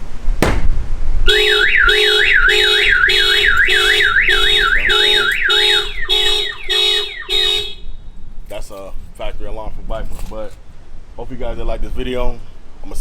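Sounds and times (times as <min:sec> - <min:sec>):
car alarm siren: 0:01.3 - 0:08.0.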